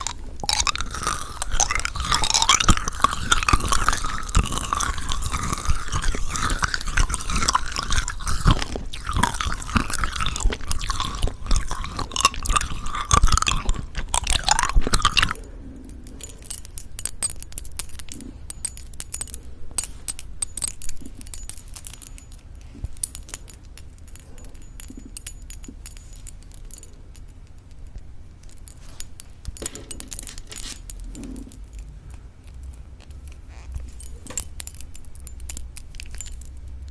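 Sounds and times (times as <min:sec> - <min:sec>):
crunchy candy chewing: 0:00.0 - 0:15.4.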